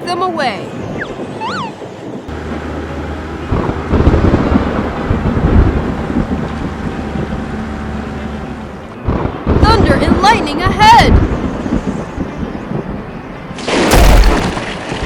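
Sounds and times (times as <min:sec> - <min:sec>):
low engine hum: 0:00.9 - 0:15.0
thunder rumbling: 0:03.2 - 0:07.4, 0:09.0 - 0:15.0.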